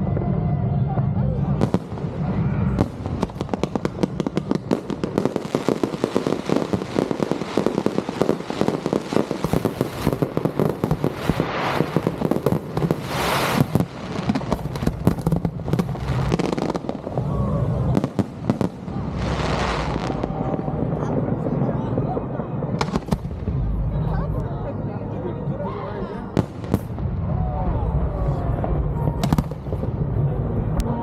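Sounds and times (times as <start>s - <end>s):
fireworks crackling pops: 1.5s - 21.1s, 22.7s - 23.7s, 29.1s - 30.0s
fireworks hissing bursts: 1.6s - 17.2s.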